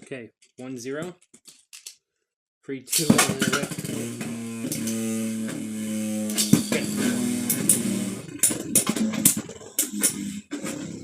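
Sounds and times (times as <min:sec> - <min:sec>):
spinning tops clacking: 0:02.9 - 0:04.0
spinning tops humming whir: 0:02.9 - 0:11.0.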